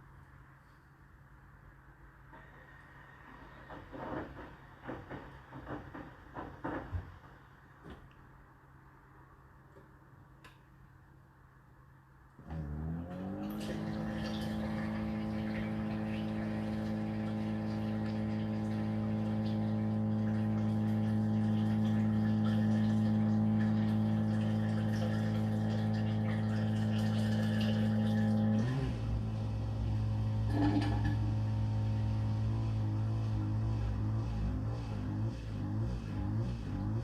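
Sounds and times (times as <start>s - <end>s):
dishwasher pump whine: 12.4s - 37.0s
low hum: 12.5s - 37.0s
water circulating: 12.5s - 37.0s.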